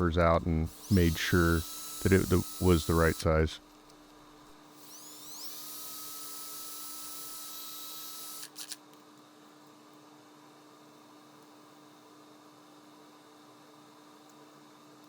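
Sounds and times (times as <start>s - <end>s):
electric drill whine: 0.7s - 3.4s, 4.7s - 8.8s.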